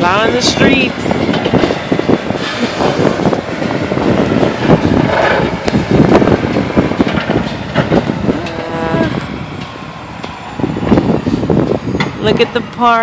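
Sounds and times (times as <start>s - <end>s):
snowplow truck rumbling: 0.0s - 13.0s.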